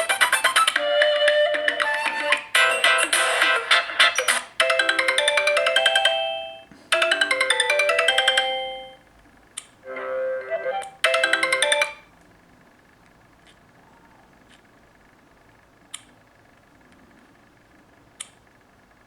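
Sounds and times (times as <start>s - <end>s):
electronic ringtone melody: 0.6s - 9.0s, 9.9s - 12.1s.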